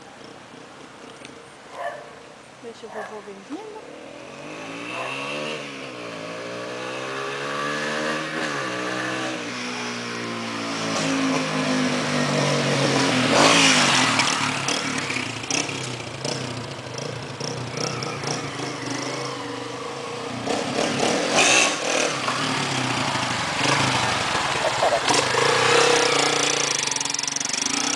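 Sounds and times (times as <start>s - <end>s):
engine revving through exhaust: 20.4s - 27.9s.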